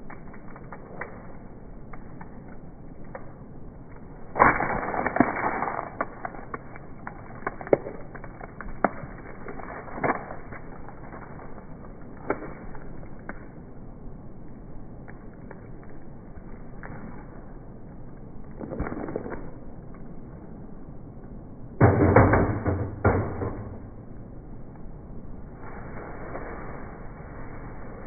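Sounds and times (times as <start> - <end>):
crunching burst: 4.2 - 8.0
objects struck and breaking: 21.8 - 24.2.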